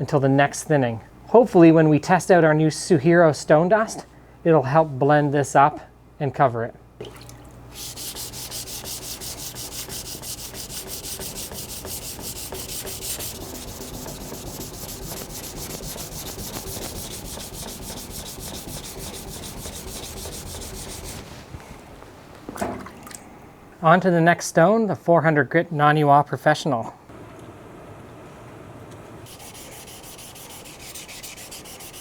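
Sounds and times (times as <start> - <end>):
knife grinding on a whetstone: 7.8 - 21.2, 29.3 - 32.0.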